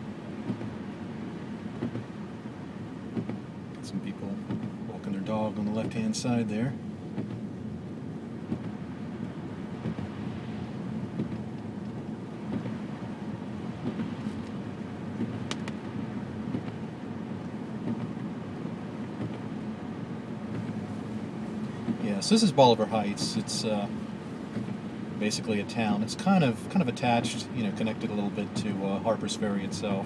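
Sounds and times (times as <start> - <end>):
car engine and tyre noise: 0.0 - 30.0.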